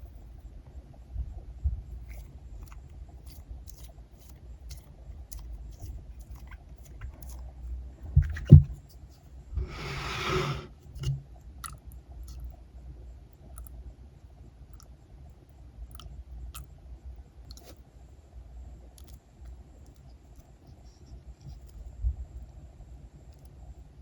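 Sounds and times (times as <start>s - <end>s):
rustling hiss: 9.6s - 10.7s.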